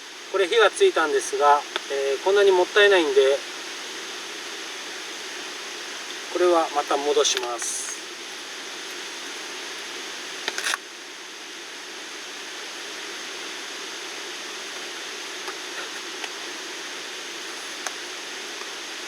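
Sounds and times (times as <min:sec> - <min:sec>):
rain falling: 0:11.6 - 0:19.0.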